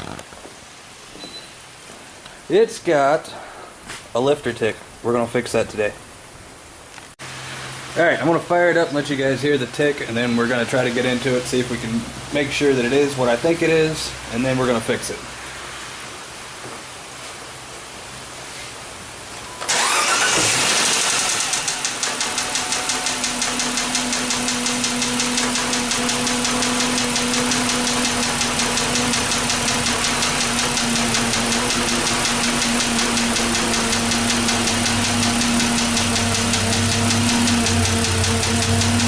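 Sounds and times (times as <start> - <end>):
car engine cranking and idling: 19.7 - 39.0
engine lifter tick: 21.3 - 39.0.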